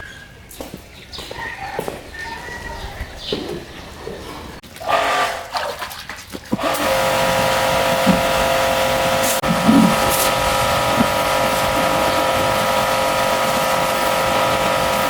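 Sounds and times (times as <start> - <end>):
pressure washer whining: 4.6 - 5.5, 6.6 - 15.0
water spray hissing: 6.6 - 15.0.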